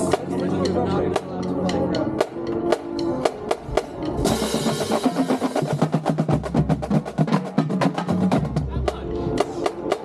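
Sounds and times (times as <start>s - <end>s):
marching drumline strikes: 3.6s - 10.0s.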